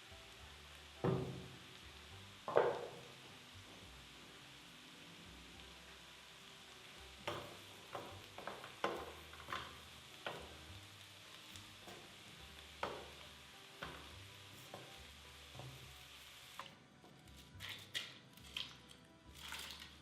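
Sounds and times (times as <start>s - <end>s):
food sizzling in a frying pan: 0.0s - 20.0s.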